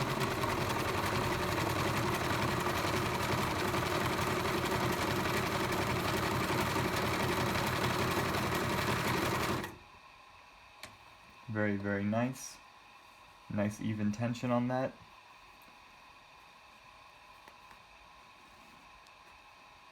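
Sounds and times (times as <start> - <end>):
sewing machine running: 0.0 - 9.8.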